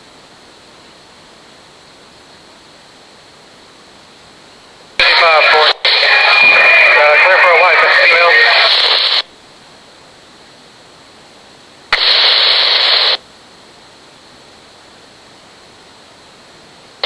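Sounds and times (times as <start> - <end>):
burst of radio static: 5.0 - 9.3, 11.9 - 13.2.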